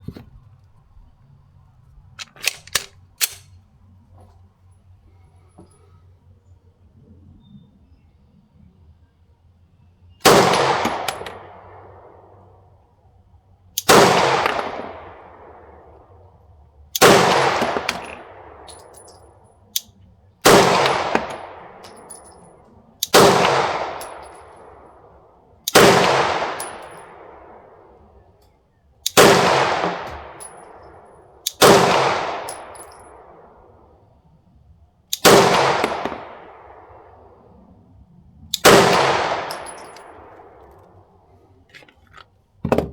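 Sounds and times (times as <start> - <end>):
pistol shots echoing: 10.2 - 12.2, 13.8 - 16.0, 17.0 - 19.1, 20.4 - 22.4, 23.0 - 28.0, 29.1 - 33.9, 35.2 - 37.3, 38.6 - 40.8.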